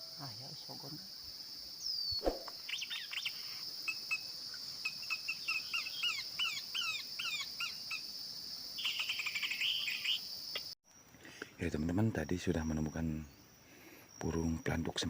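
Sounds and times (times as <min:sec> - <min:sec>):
high insect drone: 0:00.0 - 0:15.0
bird singing whistled notes: 0:01.8 - 0:04.2, 0:08.8 - 0:10.7.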